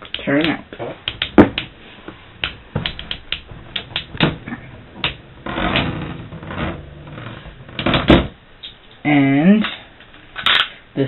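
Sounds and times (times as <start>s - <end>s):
sharp clicks and knocks: 0.0s - 1.7s, 2.4s - 6.7s.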